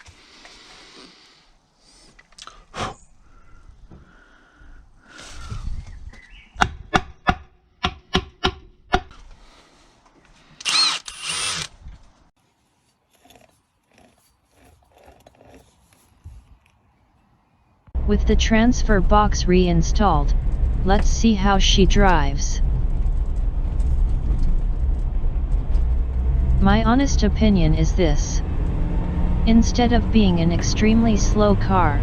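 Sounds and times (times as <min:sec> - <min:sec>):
power tool bursts: 0:10.6 - 0:11.7.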